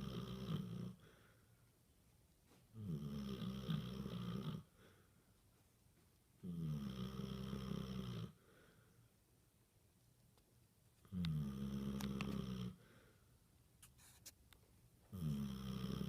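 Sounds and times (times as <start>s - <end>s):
dog snoring: 0.0s - 1.0s, 2.7s - 4.7s, 6.4s - 8.4s, 11.1s - 12.8s, 15.1s - 16.0s.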